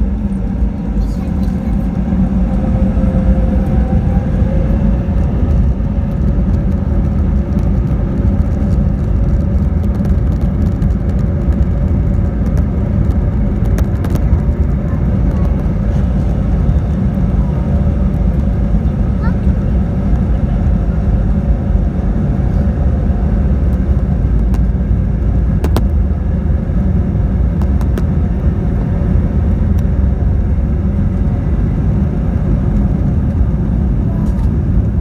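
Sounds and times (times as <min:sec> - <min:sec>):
airflow: 0:00.0 - 0:07.0
jet engine cabin rumble: 0:00.0 - 0:35.0
steady hum: 0:00.0 - 0:35.0.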